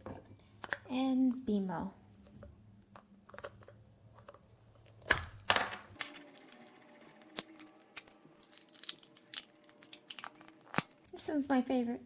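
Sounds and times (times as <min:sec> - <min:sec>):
packaging rustling: 0:06.0 - 0:11.1.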